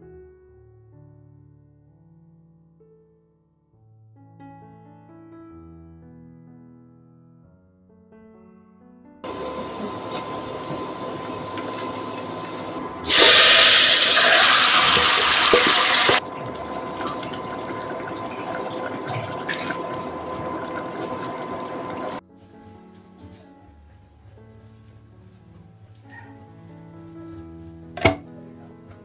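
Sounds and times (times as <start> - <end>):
water running from a tap: 9.3 - 22.2.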